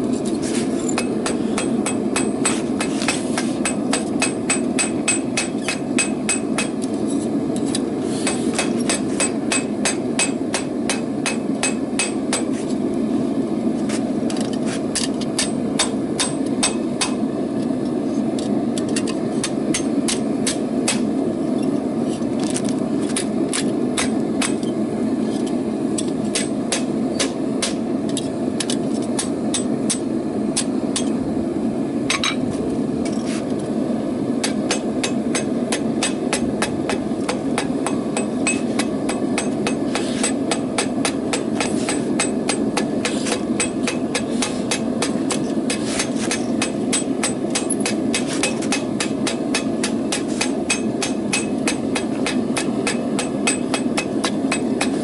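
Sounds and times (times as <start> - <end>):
hammer striking metal on anvil: 0.9 - 6.9, 7.6 - 12.6, 15.0 - 17.2, 18.9 - 21.1, 23.6 - 24.7, 26.0 - 31.2, 34.4 - 55.0.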